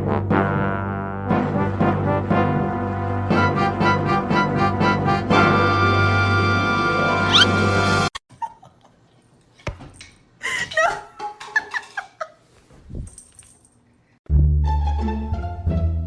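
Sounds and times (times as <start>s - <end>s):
background music: 0.0s - 8.1s, 14.3s - 16.0s
animal high wavering calls: 7.3s - 7.5s.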